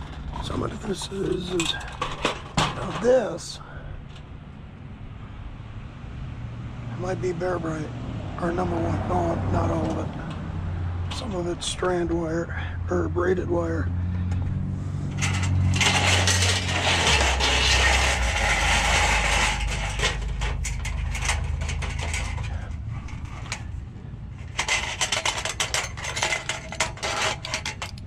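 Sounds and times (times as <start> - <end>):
wire rustling and scraping: 0.0 - 3.5, 11.0 - 11.9, 14.8 - 28.0
metal clicks and clinks: 24.5 - 28.0.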